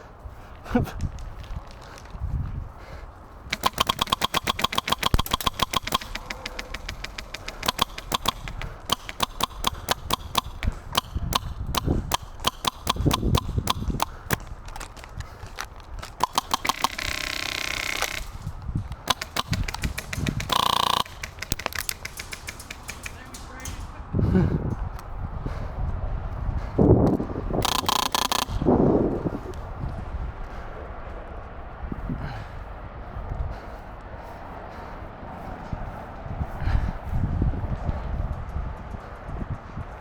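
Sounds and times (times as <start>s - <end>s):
airsoft guns firing bursts: 1.1s - 24.0s, 27.2s - 29.7s.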